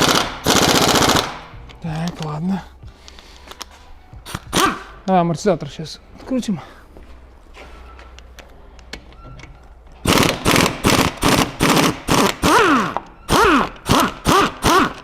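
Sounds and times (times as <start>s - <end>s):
impact wrench hammering: 4.2s - 4.9s, 10.0s - 15.0s.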